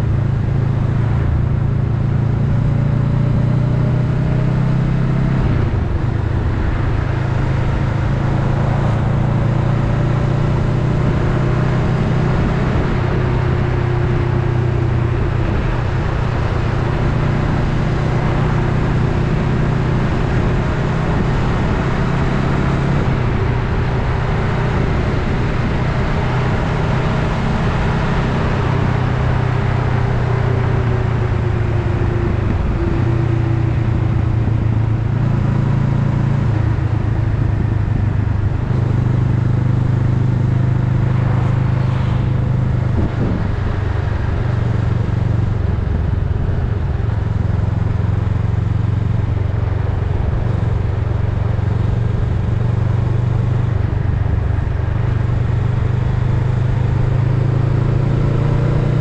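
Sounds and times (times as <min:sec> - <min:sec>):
wind and road noise: 0:00.0 - 0:59.0
motorcycle engine running: 0:22.9 - 0:59.0.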